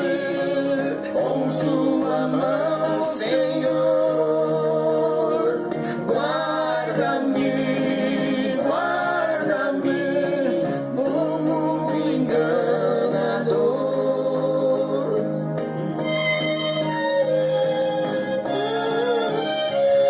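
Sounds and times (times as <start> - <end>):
voices singing a hymn: 0.0 - 15.9.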